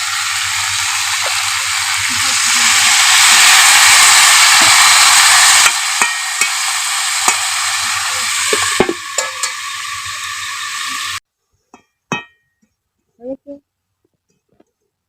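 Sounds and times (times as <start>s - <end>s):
oil sizzling in a pan: 0.0s - 11.2s
utensil knocking against pan: 8.5s - 9.6s.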